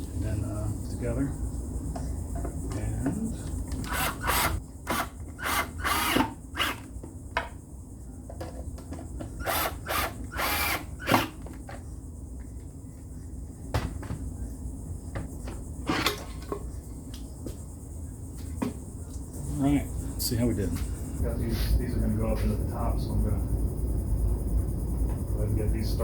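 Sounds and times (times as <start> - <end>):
power drill driving screws: 3.8 - 6.9, 9.4 - 11.4.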